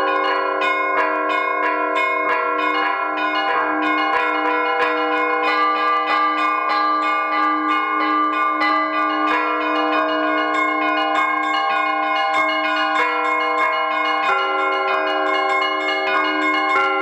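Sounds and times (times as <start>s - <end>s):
church bells ringing: 0.0s - 17.0s
deep bell humming: 3.2s - 17.0s.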